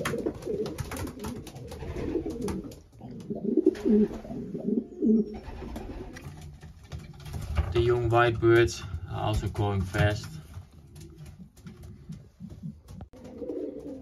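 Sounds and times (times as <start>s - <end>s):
pigeons cooing: 0.0s - 6.6s, 10.8s - 14.0s.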